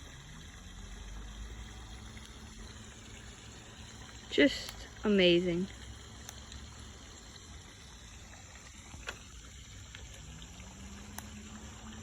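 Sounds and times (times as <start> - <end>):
faint trickling water: 0.0 - 12.0
small sharp ticks: 6.1 - 6.8, 8.5 - 12.0.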